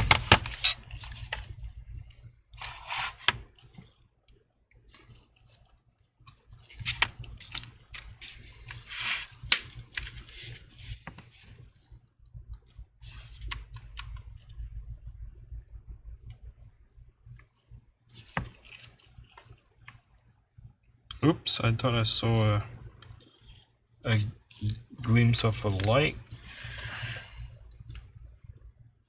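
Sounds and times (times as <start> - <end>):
rustles of hands handling cable: 0.0 - 4.0, 6.4 - 12.0.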